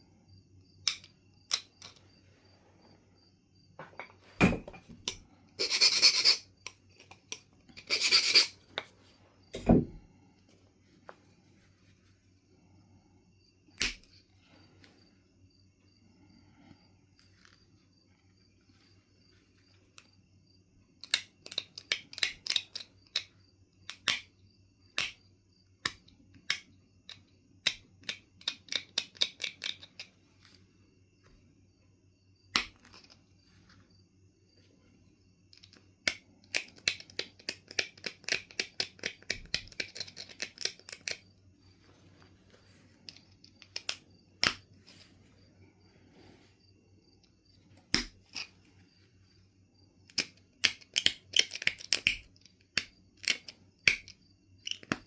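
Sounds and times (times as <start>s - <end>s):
stone clicks and scrapes: 4.7s - 8.9s, 21.0s - 23.3s, 25.8s - 30.6s, 35.5s - 41.4s, 42.1s - 45.1s, 47.8s - 48.7s, 50.0s - 55.0s.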